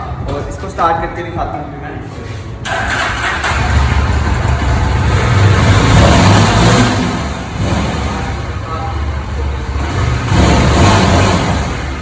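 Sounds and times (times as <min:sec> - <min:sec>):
motorcycle engine revving: 0:02.7 - 0:12.0.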